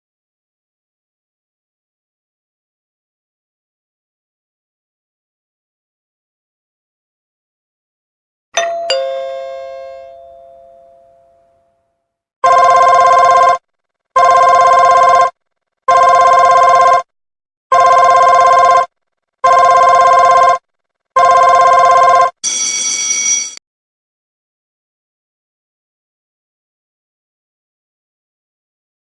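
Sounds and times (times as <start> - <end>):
telephone ringing: 8.6 - 11.5, 12.4 - 13.6, 14.2 - 17.1, 17.7 - 20.6, 21.2 - 23.6
two-note doorbell chime: 8.6 - 11.6.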